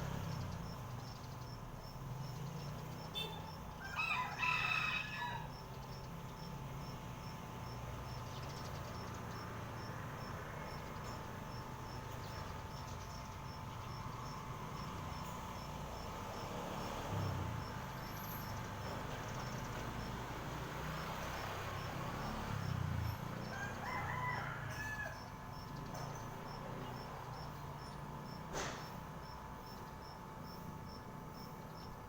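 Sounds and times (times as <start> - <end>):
insects ticking: 0.0 - 32.0.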